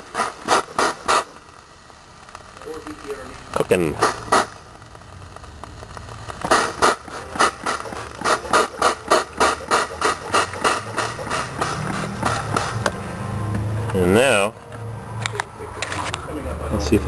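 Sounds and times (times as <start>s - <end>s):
rhythmic scraping on metal: 6.2s - 13.1s.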